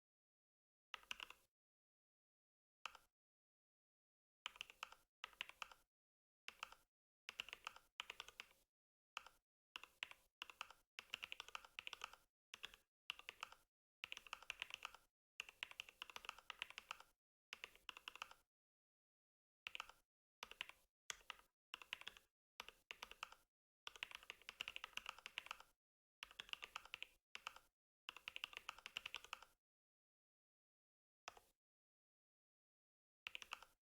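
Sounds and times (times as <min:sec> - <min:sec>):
mechanical keyboard typing: 0:09.2 - 0:18.4, 0:19.7 - 0:29.5.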